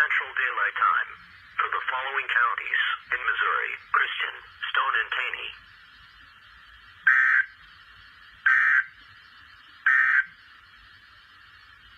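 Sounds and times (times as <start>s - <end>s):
faint radio hiss: 0.0s - 11.9s
digital data tone bursts: 6.4s - 8.9s, 9.8s - 10.4s.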